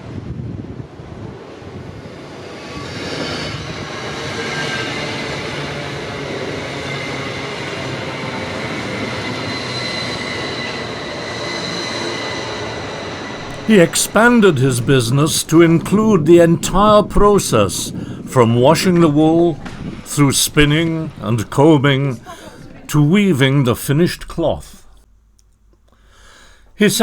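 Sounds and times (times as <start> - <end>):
high whine of train: 0.0 - 25.1
train wheels rumbling: 13.4 - 25.0.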